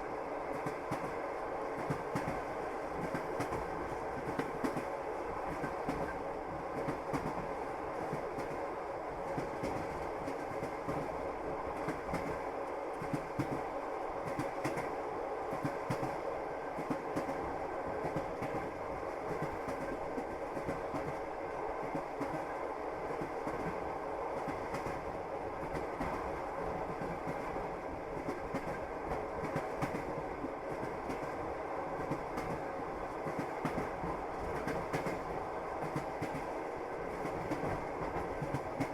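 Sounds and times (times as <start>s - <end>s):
train wheels clacking: 1.8s - 4.9s, 24.4s - 31.4s, 32.0s - 38.9s.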